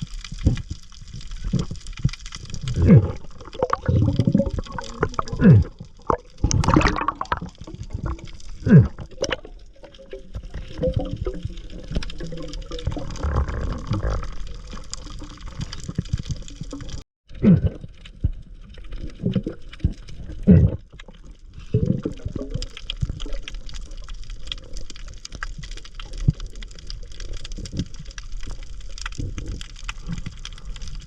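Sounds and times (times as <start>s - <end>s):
water sloshing and splashing: 0.0s - 31.0s.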